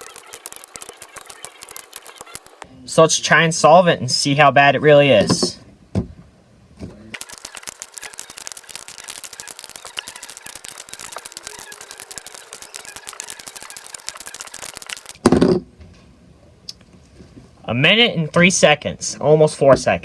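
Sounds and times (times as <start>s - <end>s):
puzzle cube plastic clicks: 0.0s - 2.6s, 7.2s - 15.3s.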